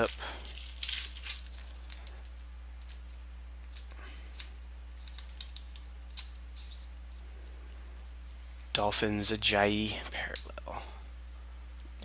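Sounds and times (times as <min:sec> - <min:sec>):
trading cards and sleeves rustling: 0:00.0 - 0:08.2
low electrical hum: 0:00.0 - 0:12.0.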